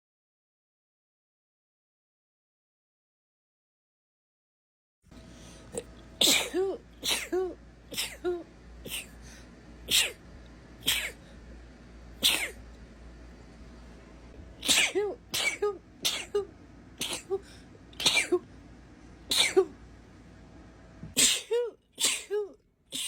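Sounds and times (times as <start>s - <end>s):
woman sneezing: 6.2s - 9.2s, 10.9s - 11.2s, 12.2s - 12.6s, 14.6s - 18.4s, 19.3s - 19.7s, 21.2s - 23.0s.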